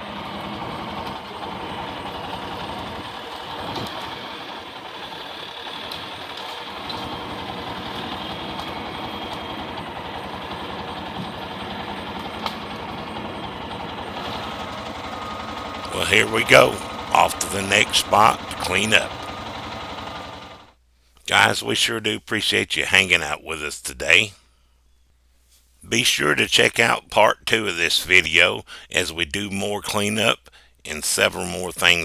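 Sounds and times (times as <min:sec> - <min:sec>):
engine running steadily: 0:00.0 - 0:20.8.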